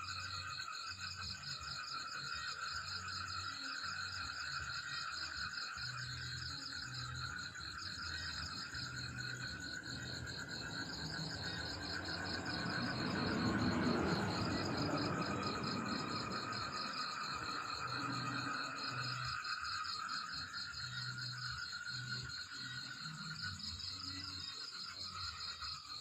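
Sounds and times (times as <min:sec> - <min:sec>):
insects chirping in chorus: 0:00.0 - 0:26.0.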